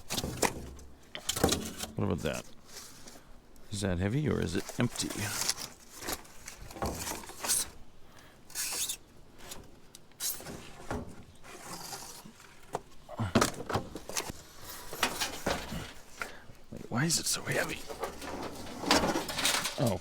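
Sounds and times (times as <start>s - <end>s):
scrap knocking and clunking: 0.0s - 3.0s, 9.4s - 16.5s, 17.4s - 20.0s.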